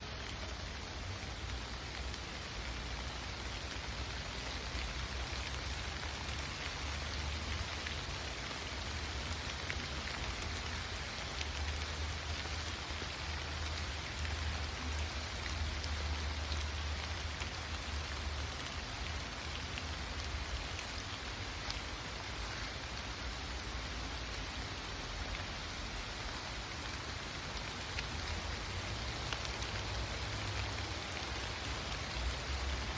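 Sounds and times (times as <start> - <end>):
rain falling on leaves: 0.0 - 32.9.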